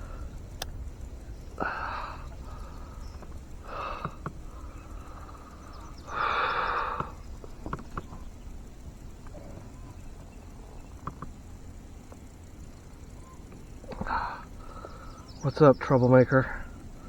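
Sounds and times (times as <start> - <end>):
person breathing out heavily: 1.6 - 3.0, 3.6 - 7.2.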